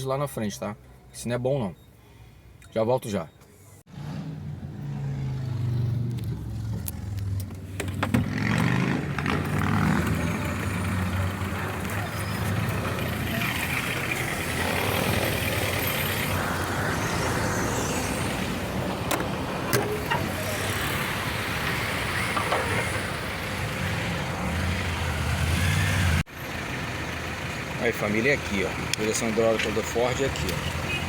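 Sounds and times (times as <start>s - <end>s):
car engine running: 9.1s - 31.0s.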